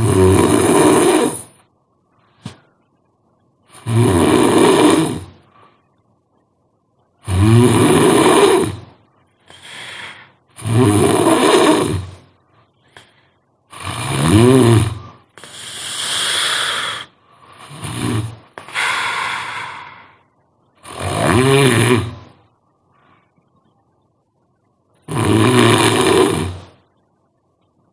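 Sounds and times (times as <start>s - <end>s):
person snoring: 0.0s - 1.6s, 3.7s - 5.4s, 7.2s - 8.9s, 9.5s - 12.2s, 13.7s - 20.2s, 20.8s - 22.3s, 25.1s - 26.8s
quiet breaths: 0.0s - 27.9s.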